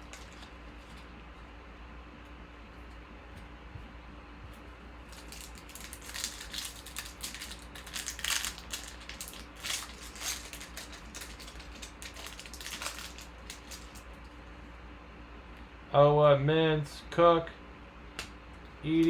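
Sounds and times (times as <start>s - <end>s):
foil wrappers crinkling: 0.0s - 1.1s, 5.0s - 14.5s.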